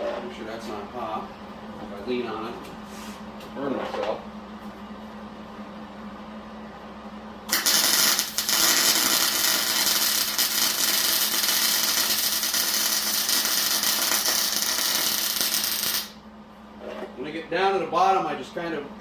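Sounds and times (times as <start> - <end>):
welding arc crackling: 7.5 - 16.2.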